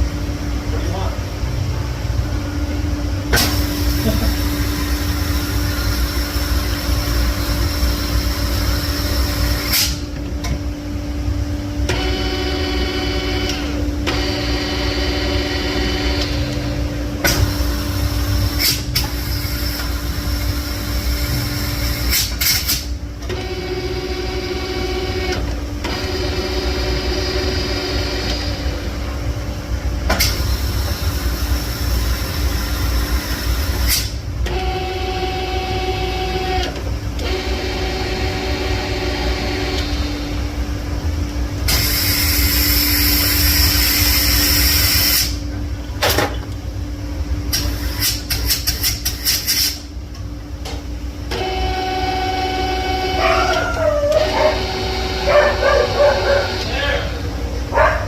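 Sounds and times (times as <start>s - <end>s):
shop rumble and hum: 0.0s - 58.0s.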